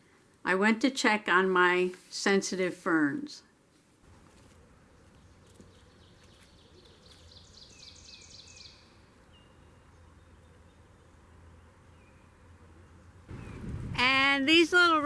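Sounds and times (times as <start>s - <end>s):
songbird trilling: 5.2s - 10.8s.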